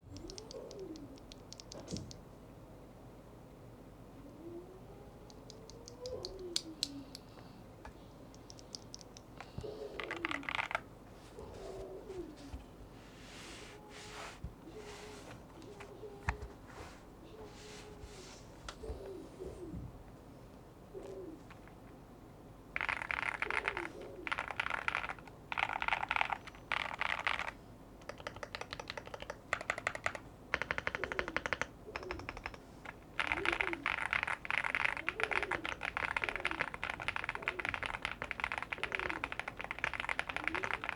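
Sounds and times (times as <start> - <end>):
mechanical keyboard typing: 0.2 - 2.1, 10.0 - 10.8, 22.8 - 40.9.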